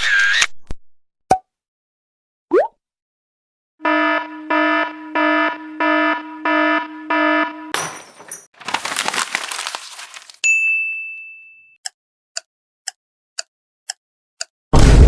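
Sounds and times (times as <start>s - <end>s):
beeping alarm: 3.8s - 7.8s
ringing ding: 10.5s - 11.8s.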